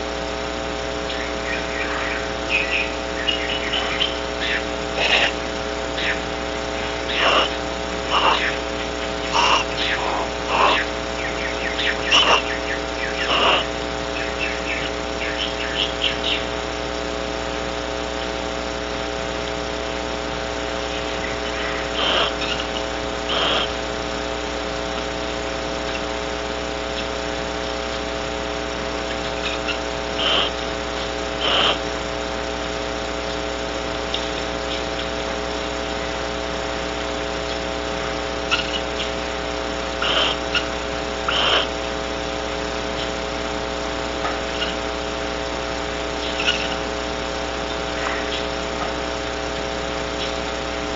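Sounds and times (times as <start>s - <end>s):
steady hum: 0.0s - 50.9s
barn owls hissing: 1.0s - 16.7s, 20.7s - 26.2s, 28.4s - 32.0s, 38.4s - 42.1s, 44.4s - 45.0s, 46.0s - 47.0s, 47.6s - 48.7s.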